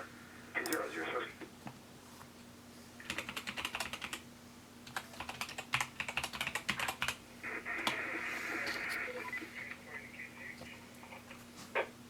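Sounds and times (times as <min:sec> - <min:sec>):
typing on computer keyboard: 0:03.0 - 0:04.2, 0:04.9 - 0:07.2.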